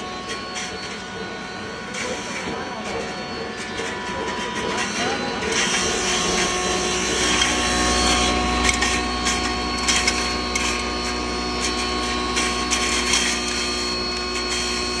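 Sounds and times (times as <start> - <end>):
pulverizer machine humming: 0.0 - 15.0.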